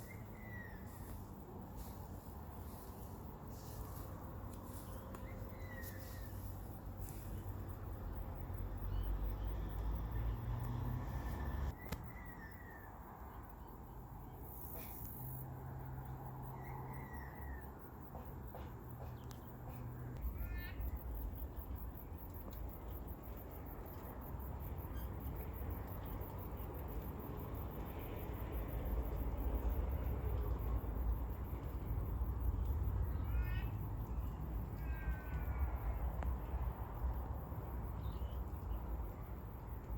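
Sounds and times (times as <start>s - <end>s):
insects chirping: 0.0s - 39.9s.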